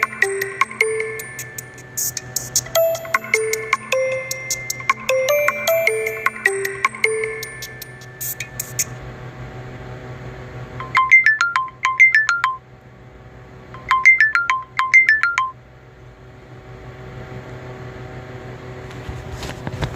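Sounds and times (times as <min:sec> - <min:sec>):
phone ringtone beeping: 0:00.0 - 0:09.0, 0:10.8 - 0:12.6, 0:13.8 - 0:15.6.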